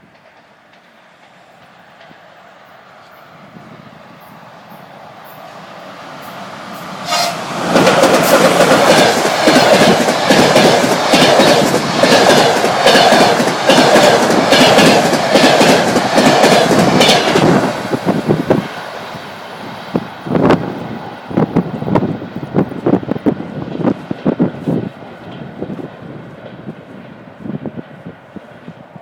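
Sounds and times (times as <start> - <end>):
train wheels clattering: 0.0 - 2.4, 6.2 - 18.7.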